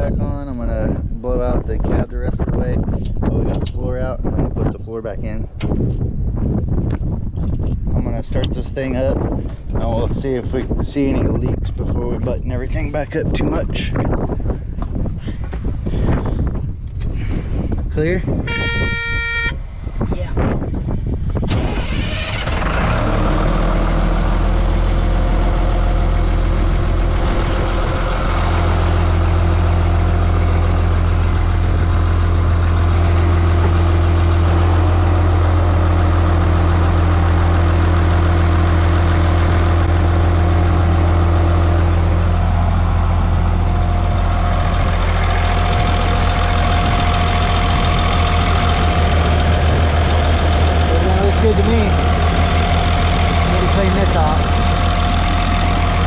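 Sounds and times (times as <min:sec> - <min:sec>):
bulldozer diesel engine idling: 0:21.6 - 0:56.0.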